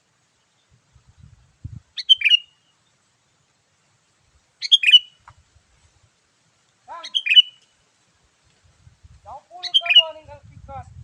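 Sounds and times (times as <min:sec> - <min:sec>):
bulbul whistled song: 0:02.0 - 0:02.6, 0:07.0 - 0:07.6.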